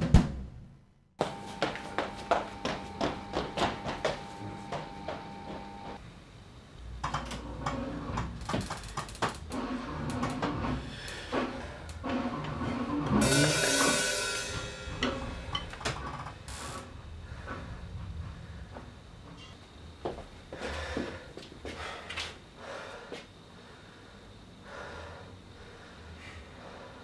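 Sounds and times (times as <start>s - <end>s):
loud ringing rattle: 13.2s - 17.3s.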